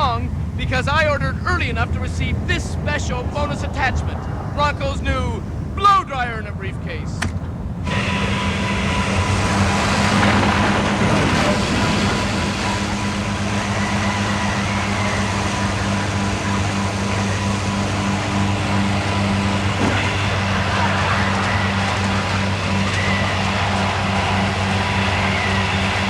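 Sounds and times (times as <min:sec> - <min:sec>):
blow dryer running: 0:07.2 - 0:26.0.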